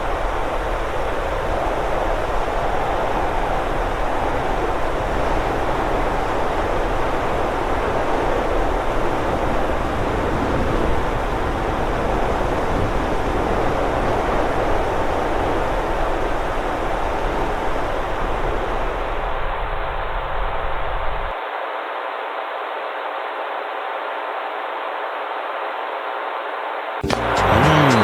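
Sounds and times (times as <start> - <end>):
steady loud rushing noise: 0.0 - 21.6.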